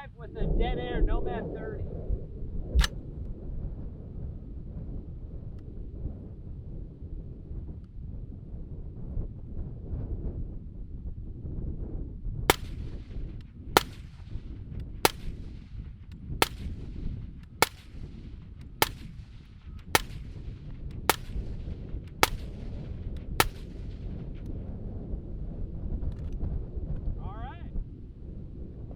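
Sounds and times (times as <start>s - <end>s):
suppressed rifle shots: 2.8s - 3.0s, 12.5s - 24.5s.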